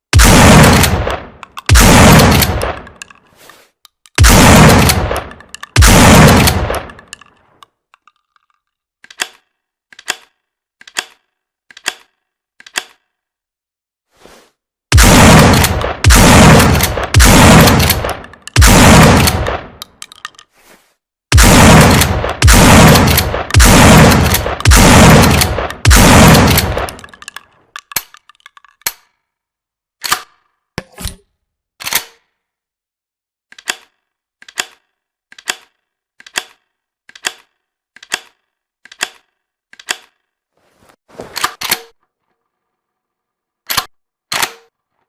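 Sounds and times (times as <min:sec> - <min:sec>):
shotgun shots echoing: 0:00.1 - 0:03.0, 0:04.2 - 0:07.1, 0:14.9 - 0:19.8, 0:21.3 - 0:27.1
gun action clicking: 0:03.9 - 0:13.1.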